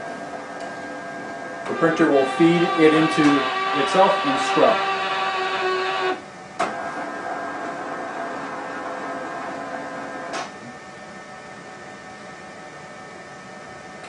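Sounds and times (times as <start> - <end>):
printer motor hum: 0.0 - 10.5.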